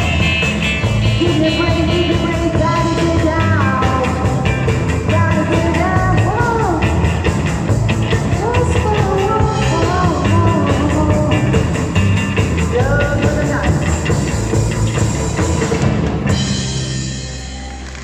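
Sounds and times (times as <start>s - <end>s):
person singing: 0.0s - 7.4s, 8.1s - 14.4s
rock band playing live: 0.0s - 18.0s.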